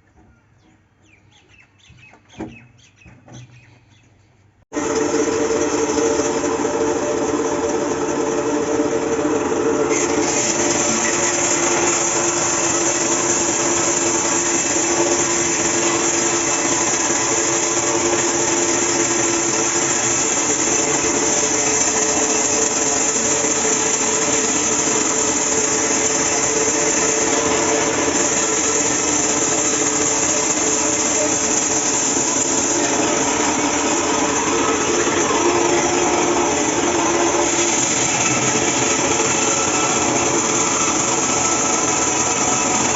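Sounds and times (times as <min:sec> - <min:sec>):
bandsaw motor and blade hum: 0:04.7 - 0:42.9
bandsaw cutting hiss: 0:09.9 - 0:42.9.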